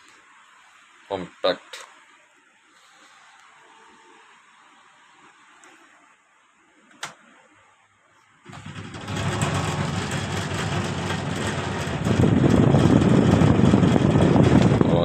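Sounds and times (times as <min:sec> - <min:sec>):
air cooler blower running unevenly: 0:08.5 - 0:15.0.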